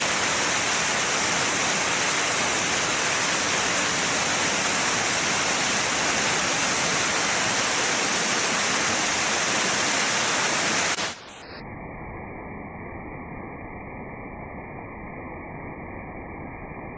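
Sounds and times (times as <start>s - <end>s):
waterfall roaring: 0.0s - 11.4s.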